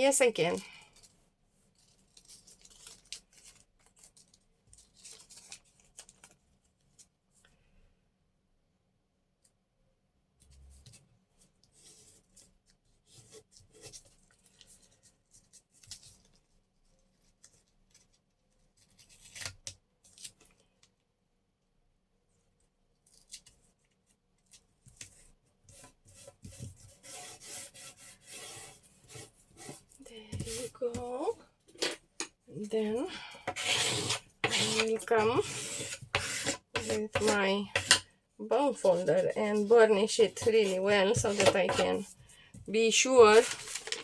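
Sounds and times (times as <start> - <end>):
tape crinkling and rubbing: 1.0 - 7.2, 11.6 - 20.8, 22.9 - 27.7, 43.2 - 44.0
paper rustle: 1.7 - 7.1, 11.6 - 20.8, 43.2 - 44.0.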